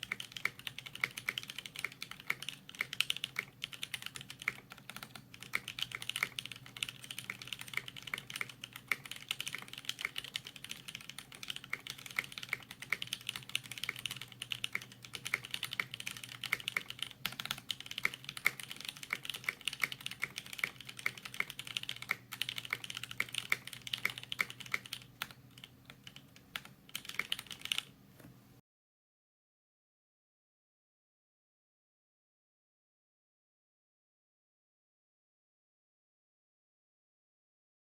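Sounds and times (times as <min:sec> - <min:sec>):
fast typing on mechanical keyboard: 0:00.0 - 0:27.9.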